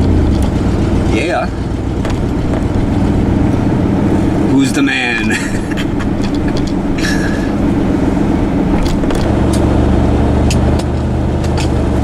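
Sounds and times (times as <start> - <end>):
vehicle engine running: 0.0 - 12.0
light clicks and rattles: 5.2 - 6.8.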